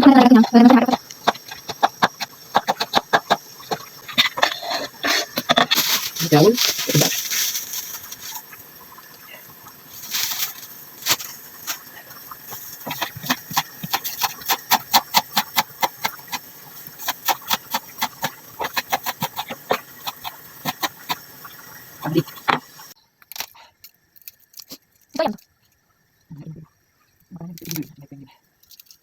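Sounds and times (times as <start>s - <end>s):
knife chopping on cutting board: 1.0s - 3.4s, 12.9s - 21.2s.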